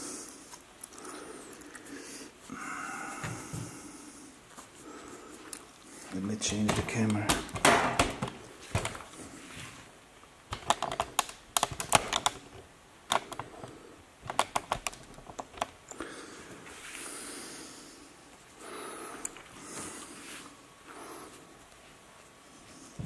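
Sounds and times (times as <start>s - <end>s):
soft hiss: 15.8s - 23.0s.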